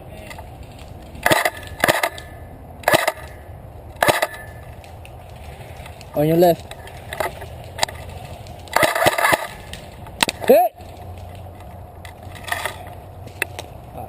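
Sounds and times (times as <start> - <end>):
airsoft gun fire clicks: 1.2 - 3.4, 4.0 - 4.5
person shouting: 10.4 - 10.8.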